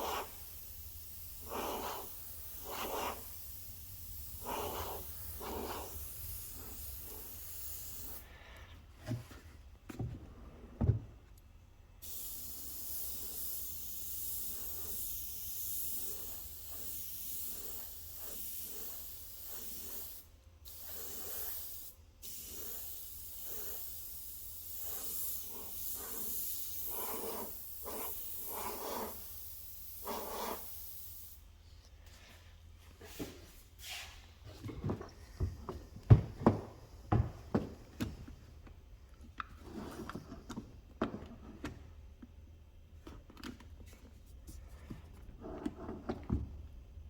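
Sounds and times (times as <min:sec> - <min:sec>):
paint sprayer hissing: 0:00.0 - 0:08.3, 0:12.0 - 0:31.4.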